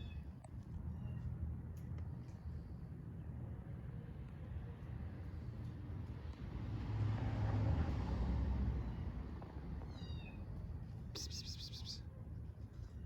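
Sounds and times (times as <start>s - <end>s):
passing vehicle rumble: 6.4s - 9.8s
kitten mewing: 11.2s - 12.0s.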